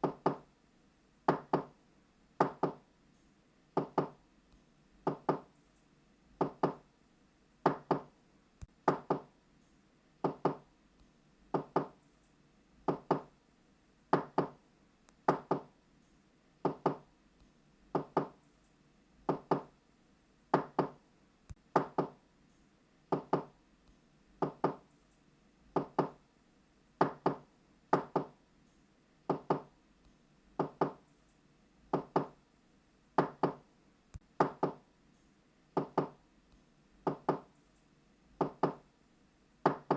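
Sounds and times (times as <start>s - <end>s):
knocking on a door: 0.0s - 0.4s, 1.3s - 1.7s, 2.4s - 2.8s, 3.8s - 4.2s, 5.1s - 5.5s, 6.4s - 6.8s, 7.6s - 8.1s, 8.8s - 9.3s, 10.2s - 10.6s, 11.5s - 12.0s, 12.9s - 13.3s, 14.1s - 14.6s, 15.3s - 15.7s, 16.6s - 17.1s, 18.0s - 18.4s, 19.3s - 19.7s, 20.5s - 21.0s, 21.8s - 22.2s, 23.1s - 23.5s, 24.4s - 24.8s, 25.8s - 26.2s, 27.0s - 28.4s, 29.3s - 29.7s, 30.6s - 31.0s, 31.9s - 32.4s, 33.2s - 33.6s, 34.4s - 34.8s, 35.8s - 36.2s, 37.0s - 37.5s, 38.4s - 38.8s, 39.6s - 39.9s.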